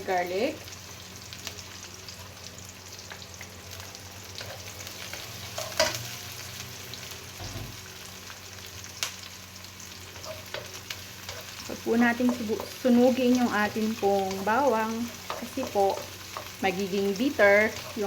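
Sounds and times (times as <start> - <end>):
onion sizzling in hot oil: 0.0 - 18.0
utensil stirring and knocking pan: 14.9 - 18.0.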